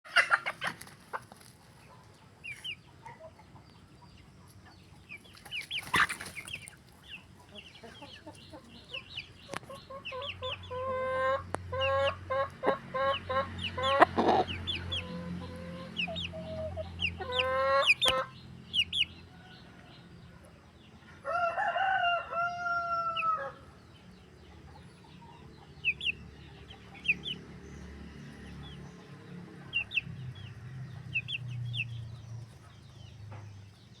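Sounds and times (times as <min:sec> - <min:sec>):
chickens clucking: 0:00.1 - 0:34.0
rooster crowing: 0:21.2 - 0:23.6.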